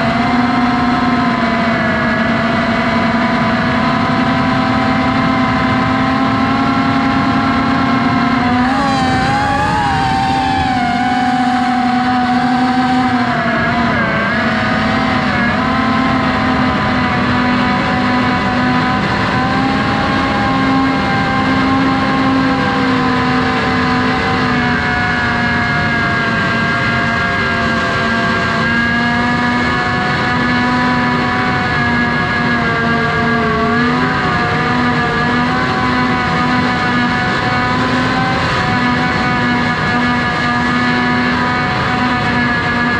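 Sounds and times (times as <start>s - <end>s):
quadcopter motors whining: 0.0s - 42.9s.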